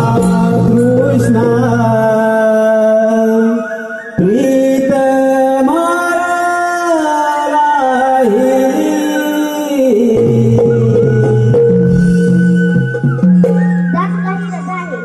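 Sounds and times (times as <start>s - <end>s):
low instrumental accompaniment: 0.0s - 3.1s, 10.2s - 15.0s.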